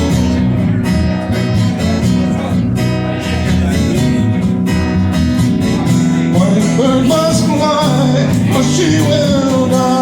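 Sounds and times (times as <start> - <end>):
bass guitar: 0.0 - 10.0
strummed acoustic guitar: 0.0 - 10.0
person singing: 6.2 - 10.0.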